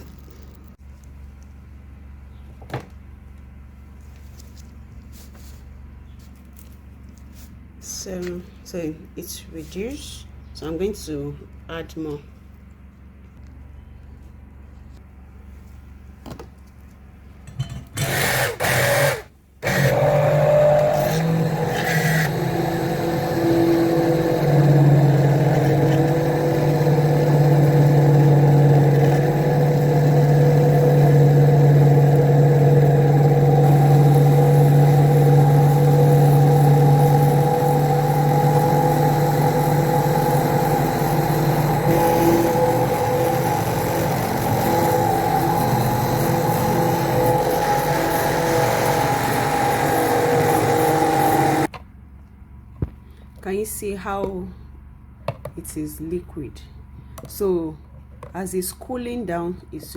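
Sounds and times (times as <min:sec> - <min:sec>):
electric hand blender humming: 0:18.0 - 0:51.7.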